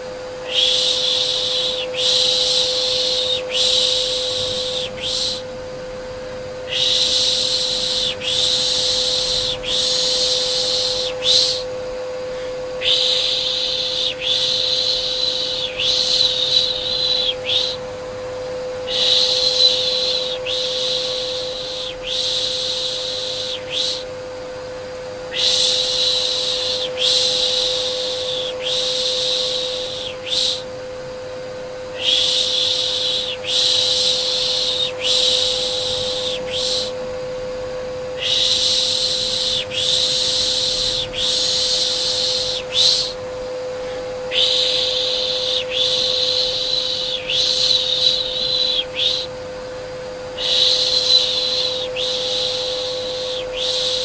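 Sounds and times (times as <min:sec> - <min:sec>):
vacuum cleaner hum: 0:00.0 - 0:54.0
person shushing: 0:00.4 - 0:05.4, 0:06.7 - 0:11.7, 0:12.3 - 0:17.8, 0:18.9 - 0:24.1, 0:25.3 - 0:30.7, 0:32.0 - 0:37.0, 0:38.2 - 0:49.3.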